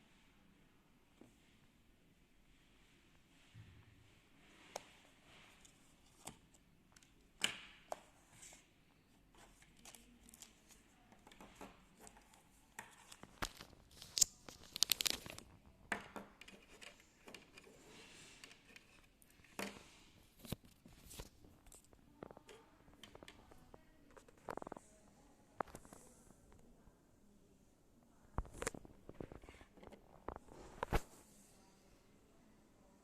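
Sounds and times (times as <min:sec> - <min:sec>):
packaging crinkling and rustling: 0:13.1 - 0:15.6.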